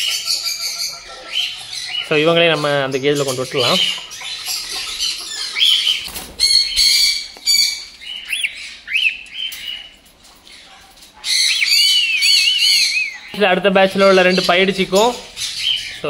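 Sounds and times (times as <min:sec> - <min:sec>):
bird chicks squawking: 0:00.0 - 0:16.0.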